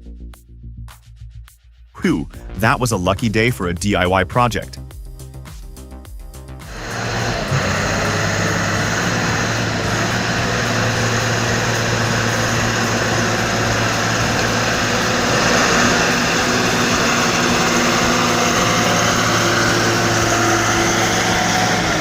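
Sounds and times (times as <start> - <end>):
heavy machinery running: 6.6 - 22.0.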